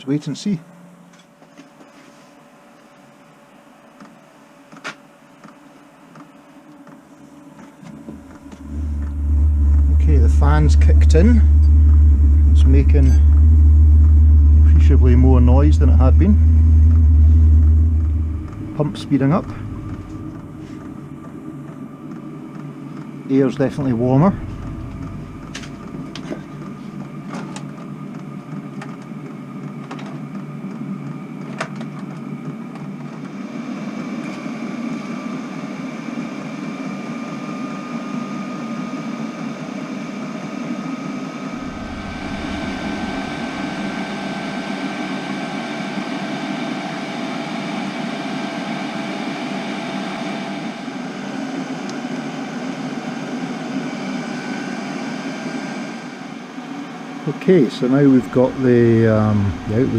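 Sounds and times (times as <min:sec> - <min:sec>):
air heater fan blowing with whine: 0:00.0 - 0:59.9.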